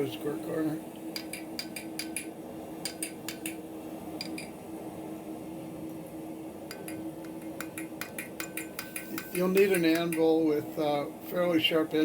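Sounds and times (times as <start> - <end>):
hammer tapping iron on anvil: 1.2 - 3.6, 4.2 - 4.6, 6.7 - 10.4.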